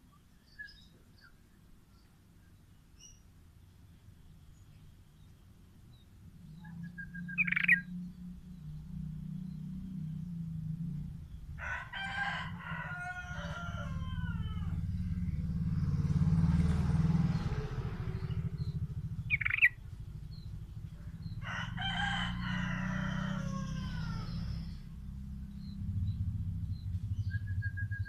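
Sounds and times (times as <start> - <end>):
steady low hum: 0.0 - 28.0
rising bird chirp: 4.2 - 11.6, 13.2 - 28.0
rooster crowing: 11.6 - 15.0, 21.4 - 24.8.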